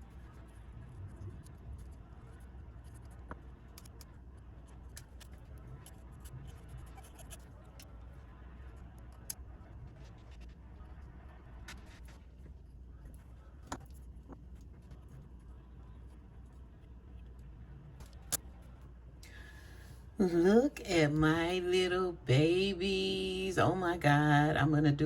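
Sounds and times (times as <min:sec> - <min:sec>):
low steady hum: 0:00.0 - 0:25.0
pen tip scratching and clicking: 0:06.2 - 0:07.4.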